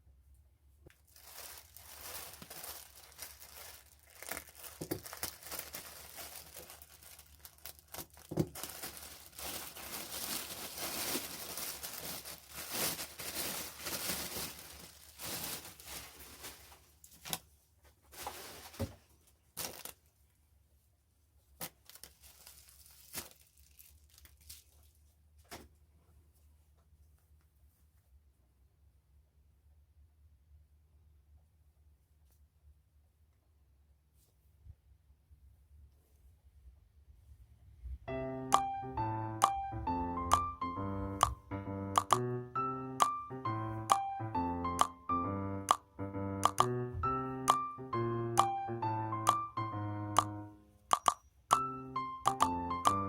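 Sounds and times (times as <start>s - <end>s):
packaging torn and crinkled: 1.0s - 17.5s, 18.1s - 20.1s, 21.6s - 25.0s.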